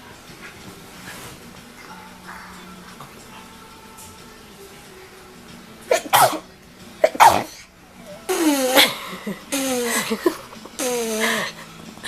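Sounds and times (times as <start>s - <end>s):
person sneezing: 5.9s - 7.6s, 8.3s - 11.6s
short voiced sounds: 10.8s - 11.5s.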